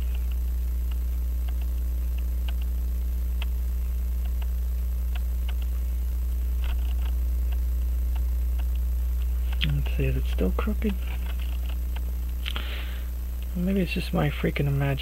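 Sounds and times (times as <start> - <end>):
faint ticks and clicks: 0.0 - 2.8, 3.4 - 3.6, 4.2 - 5.8, 6.6 - 12.7
low electrical hum: 0.0 - 15.0.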